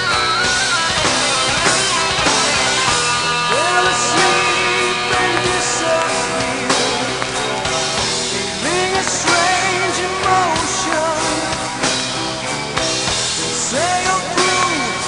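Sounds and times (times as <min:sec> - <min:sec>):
rock band playing: 0:00.0 - 0:15.0
person singing: 0:03.1 - 0:07.9, 0:08.6 - 0:11.6, 0:13.6 - 0:15.0.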